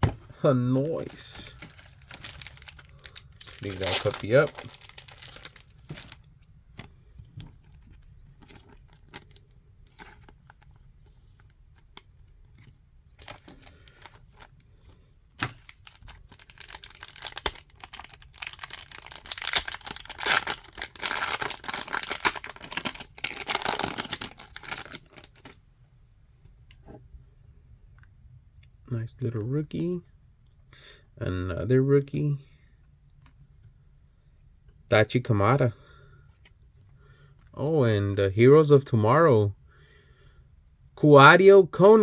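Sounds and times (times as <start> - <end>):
foil wrapper tearing and crinkling: 0.8 - 6.2, 13.2 - 14.5, 15.4 - 25.6.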